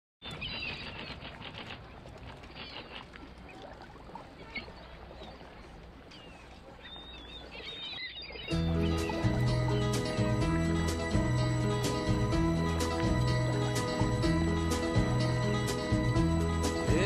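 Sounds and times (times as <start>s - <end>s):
birds chirping: 0.2s - 3.6s, 4.3s - 17.0s
music: 8.5s - 17.0s.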